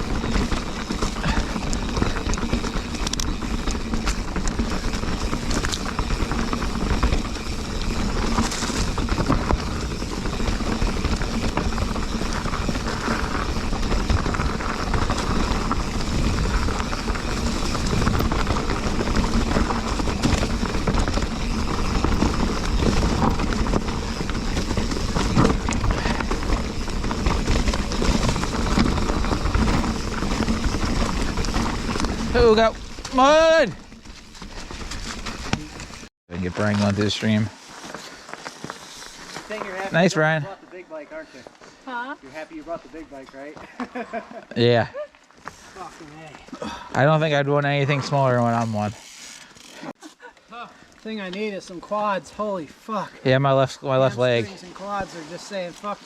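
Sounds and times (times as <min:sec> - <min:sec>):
bike clicks and rattles: 0:00.0 - 0:37.1, 0:45.4 - 0:49.9
bike tyres on rocky trail: 0:00.0 - 0:56.0.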